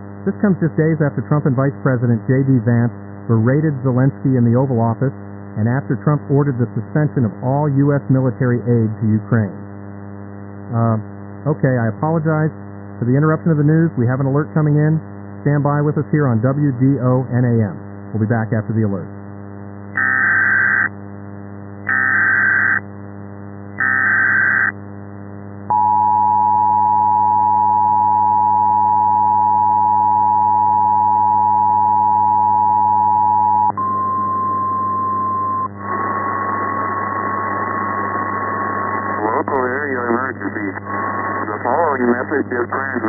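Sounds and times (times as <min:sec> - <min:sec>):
steady low hum: 0:00.0 - 0:43.0
data header bursts: 0:20.0 - 0:20.9, 0:21.9 - 0:22.8, 0:23.8 - 0:24.7
two-tone attention signal: 0:25.7 - 0:35.7
higher steady tone: 0:25.7 - 0:35.9.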